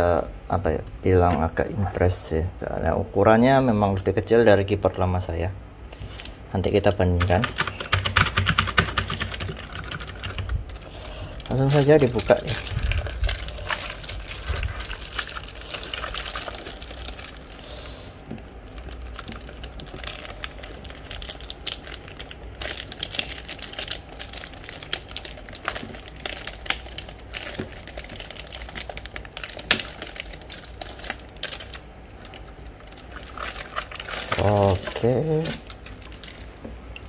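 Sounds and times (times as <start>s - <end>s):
keyboard clicks and taps: 7.2s - 10.4s
plastic rustling: 7.2s - 37.0s.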